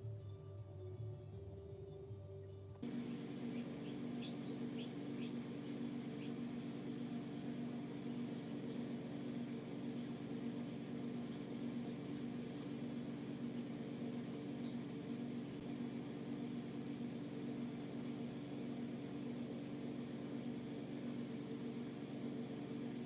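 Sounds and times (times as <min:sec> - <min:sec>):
low machine hum: 0:00.0 - 0:23.0
baby birds peeping: 0:02.9 - 0:15.6.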